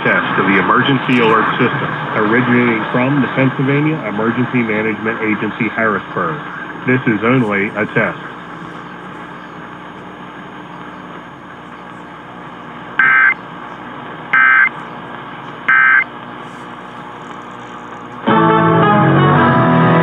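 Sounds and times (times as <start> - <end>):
radio hiss: 0.0 - 18.3
digital data tone bursts: 13.0 - 13.4, 14.3 - 14.8, 15.7 - 16.1
music: 18.2 - 20.0.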